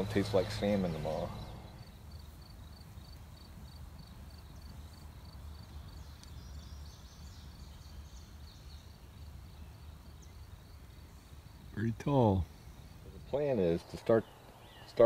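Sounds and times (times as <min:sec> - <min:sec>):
insects chirping: 0:00.0 - 0:15.0.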